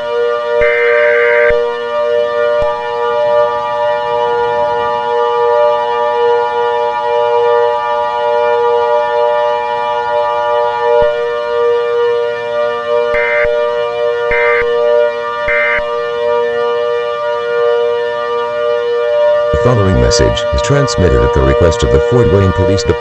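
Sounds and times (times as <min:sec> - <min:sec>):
wavering steady siren: 0:00.0 - 0:23.0
buzzy digital data burst: 0:13.2 - 0:13.5.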